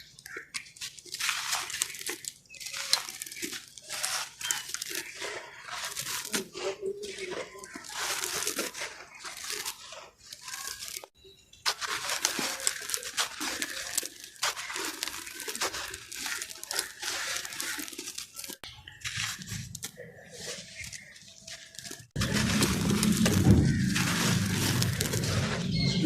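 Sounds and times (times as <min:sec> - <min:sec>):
cement block crunching: 0:00.0 - 0:26.0.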